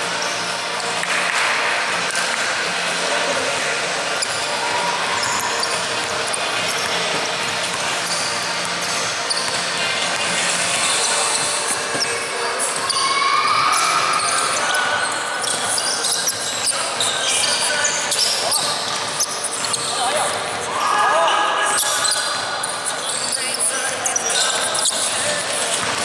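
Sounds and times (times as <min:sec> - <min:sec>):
basketball bouncing on court: 0:03.3 - 0:20.7, 0:23.9 - 0:26.0
shoe squeaks: 0:04.1 - 0:26.0.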